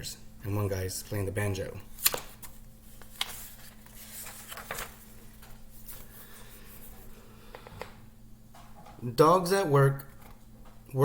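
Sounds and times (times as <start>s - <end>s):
steady low hum: 0.0s - 11.0s
book pages rustling: 2.0s - 7.7s.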